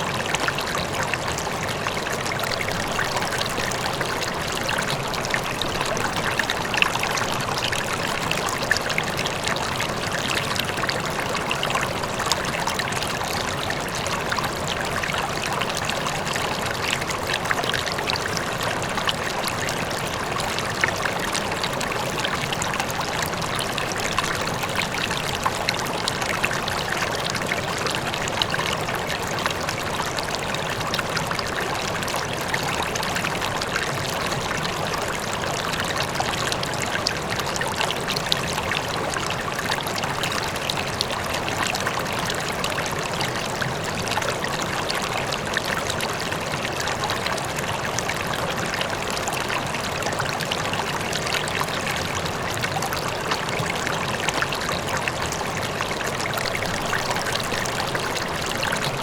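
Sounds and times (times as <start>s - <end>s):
river water rushing: 0.0s - 59.0s.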